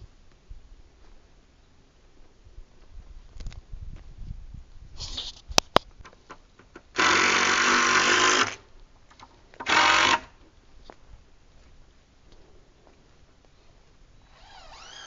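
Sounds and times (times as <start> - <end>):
power drill running: 7.0 - 8.6, 9.6 - 10.3, 14.2 - 15.0.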